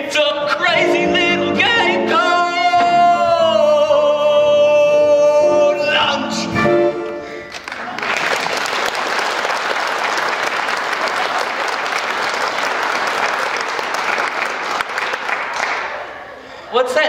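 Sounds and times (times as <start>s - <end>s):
audience applauding: 7.5s - 16.3s.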